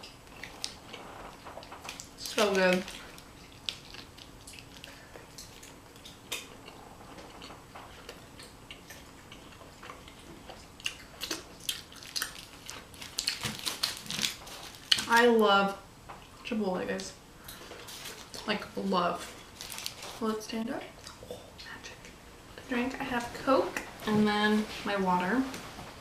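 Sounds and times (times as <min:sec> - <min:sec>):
person chewing food: 0:00.0 - 0:02.2, 0:02.8 - 0:15.1, 0:20.9 - 0:22.2.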